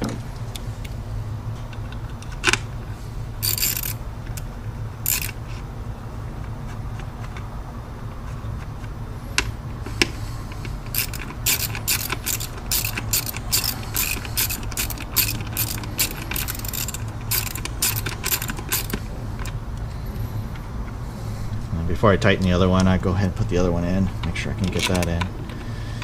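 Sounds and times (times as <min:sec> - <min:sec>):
low hum: 0:00.0 - 0:26.0
ratchet wrench clicking: 0:03.4 - 0:05.4, 0:10.8 - 0:19.5.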